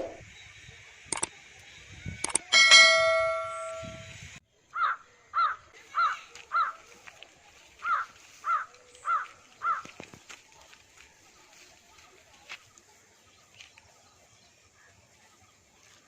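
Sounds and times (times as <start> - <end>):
bird calling: 7.8 - 10.1.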